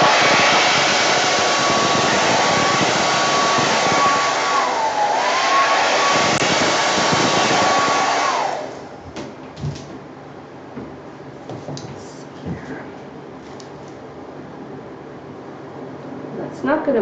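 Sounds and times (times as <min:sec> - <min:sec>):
hair dryer whine: 0:00.0 - 0:09.9.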